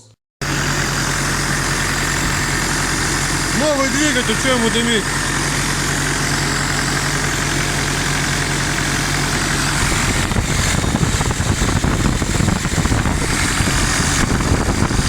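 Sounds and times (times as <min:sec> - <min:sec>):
car engine idling: 0:00.4 - 0:15.0.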